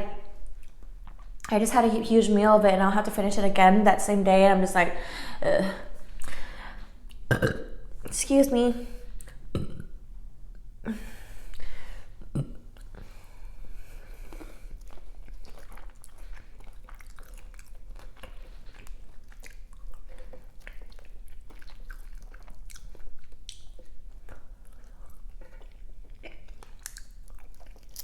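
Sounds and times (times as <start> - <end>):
person chewing food: 0.2 - 1.5, 11.3 - 28.0.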